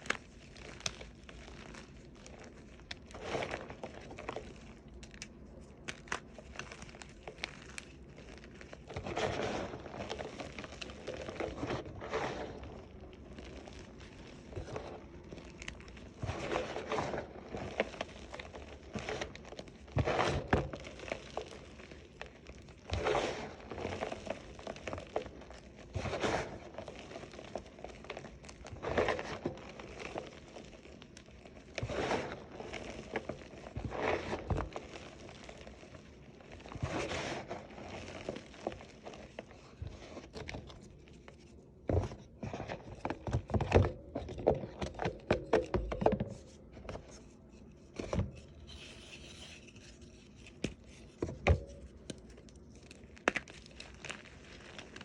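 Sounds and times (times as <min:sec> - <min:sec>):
chalk crunching and crumbling: 0:00.0 - 0:55.0.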